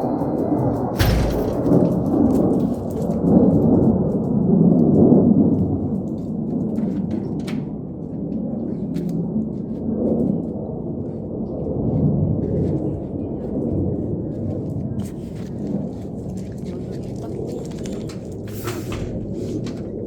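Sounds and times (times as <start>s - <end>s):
airplane passing overhead: 0.0s - 20.0s
sharp knock: 1.0s - 2.1s.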